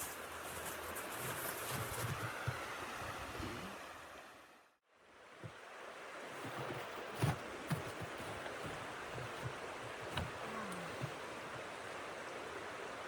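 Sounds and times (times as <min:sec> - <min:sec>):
sharp knocks and thumps: 0:06.4 - 0:11.2.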